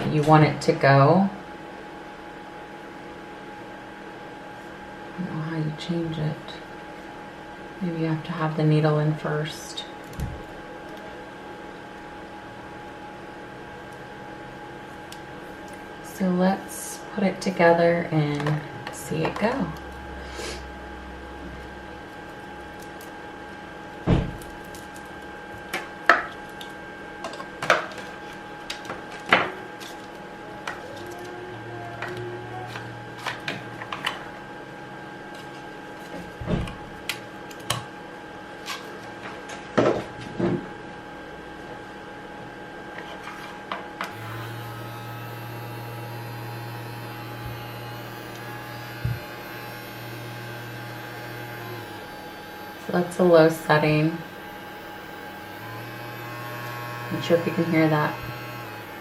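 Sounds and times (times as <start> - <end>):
pen motor humming: 44.1 - 59.0.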